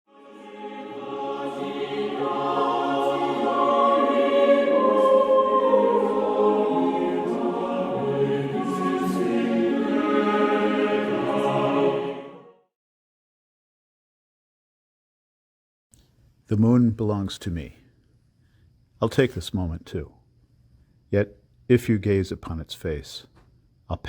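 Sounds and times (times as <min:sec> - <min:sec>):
choir singing sustained chords: 0:00.1 - 0:12.7.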